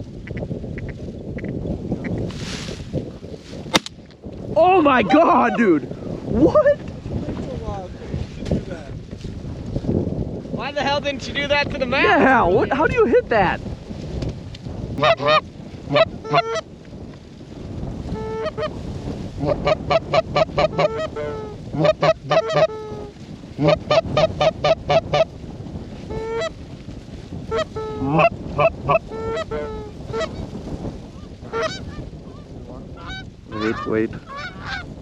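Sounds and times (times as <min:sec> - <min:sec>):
geese honking: 0:15.0 - 0:16.6, 0:18.1 - 0:18.7, 0:19.4 - 0:25.3, 0:26.1 - 0:26.6, 0:27.5 - 0:30.4, 0:31.5 - 0:32.0, 0:33.0 - 0:34.9.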